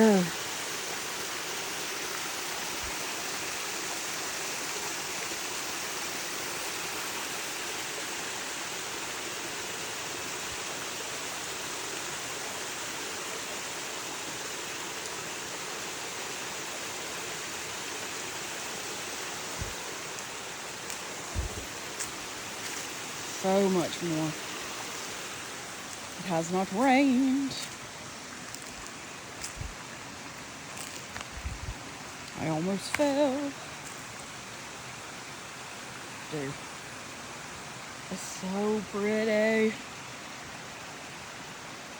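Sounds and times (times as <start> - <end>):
waterfall rushing: 0.0 - 41.9
soft low thumps: 19.6 - 19.8, 21.2 - 21.8, 29.4 - 29.8, 31.3 - 31.8.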